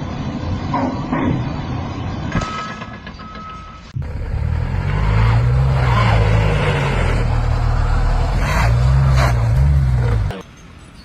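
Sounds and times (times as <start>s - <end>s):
large engine droning: 4.0s - 10.4s.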